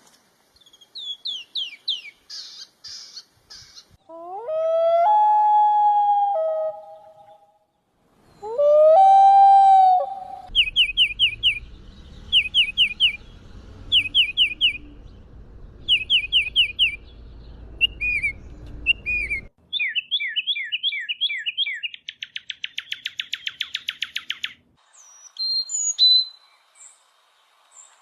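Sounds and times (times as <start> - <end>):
songbird singing: 0.5 - 28.0
low background rumble: 10.4 - 19.5.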